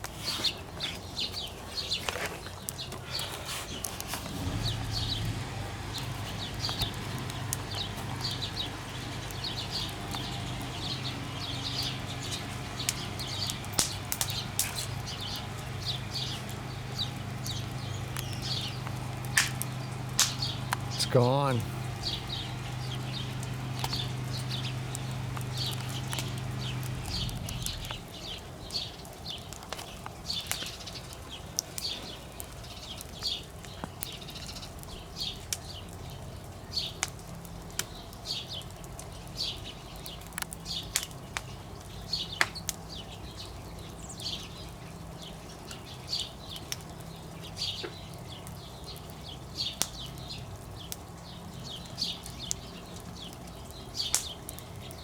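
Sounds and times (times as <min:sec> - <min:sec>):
campfire crackling and popping: 0:00.0 - 0:55.0.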